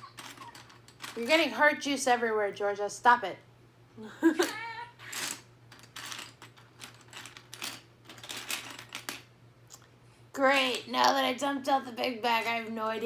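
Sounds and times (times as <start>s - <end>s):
plastic bricks clattering: 0.0s - 1.4s, 5.1s - 9.3s.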